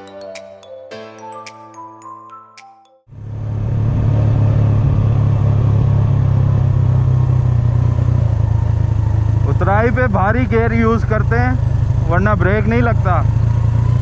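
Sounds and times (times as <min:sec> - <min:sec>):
chiming music notes: 0:00.0 - 0:03.1
motorcycle engine droning: 0:03.1 - 0:14.0.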